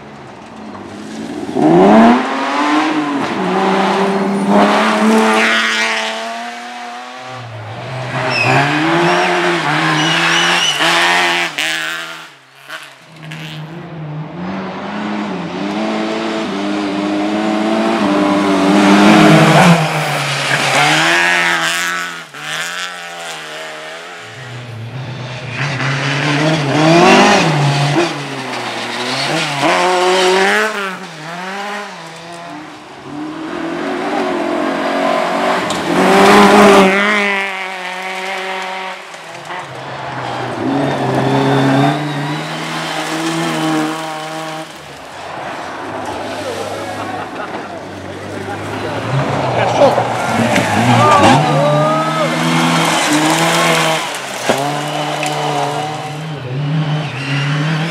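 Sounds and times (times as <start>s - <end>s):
rally car engine revving: 0.2s - 57.9s
tyre squeal: 8.1s - 11.4s, 39.6s - 44.2s.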